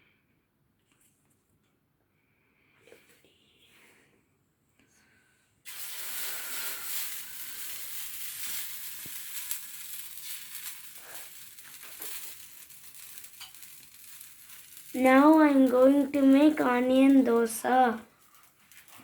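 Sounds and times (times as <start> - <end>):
hot griddle sizzling: 5.7 - 19.0.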